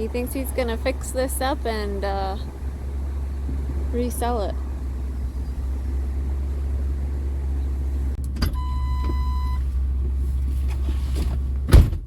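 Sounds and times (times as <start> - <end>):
engine idling: 0.0 - 11.7
door slamming: 11.7 - 12.0.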